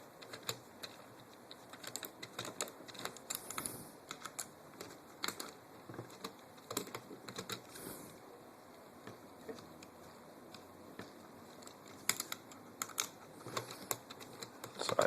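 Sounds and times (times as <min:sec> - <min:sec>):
small metal parts clicking: 0:11.4 - 0:15.0.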